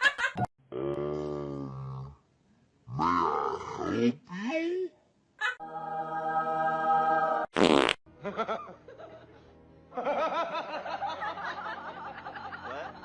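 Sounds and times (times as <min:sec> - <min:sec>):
buzzy fart-like noise: 0:07.6 - 0:08.0.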